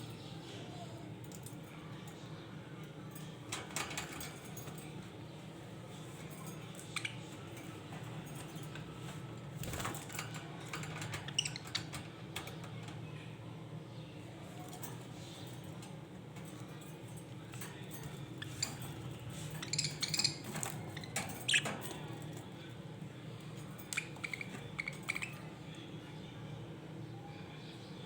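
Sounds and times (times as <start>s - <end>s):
budgies clicking and scratching: 3.1s - 13.0s, 14.4s - 25.9s.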